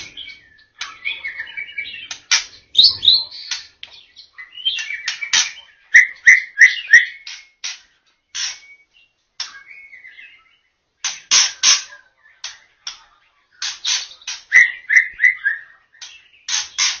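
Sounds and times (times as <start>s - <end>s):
bird singing scratchy notes: 0.0s - 17.0s
whistled bird notes: 2.8s - 7.4s, 8.3s - 10.7s, 13.6s - 17.0s.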